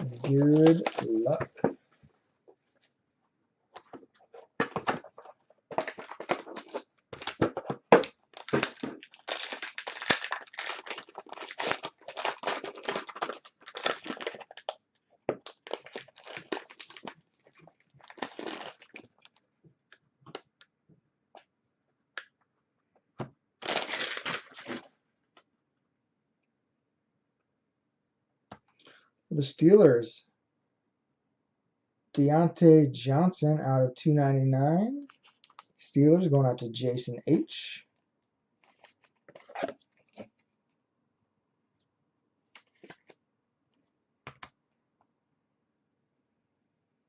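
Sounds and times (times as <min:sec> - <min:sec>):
plastic wrapping torn and crinkled: 0:00.1 - 0:01.3, 0:04.8 - 0:19.4, 0:23.6 - 0:24.9, 0:35.1 - 0:35.7, 0:38.6 - 0:40.2.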